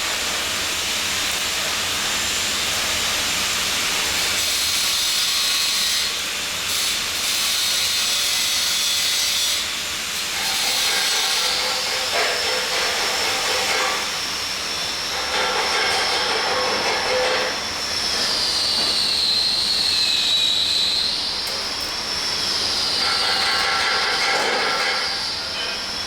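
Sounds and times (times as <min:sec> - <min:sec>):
high-pitched machine whine: 0:09.6 - 0:26.0.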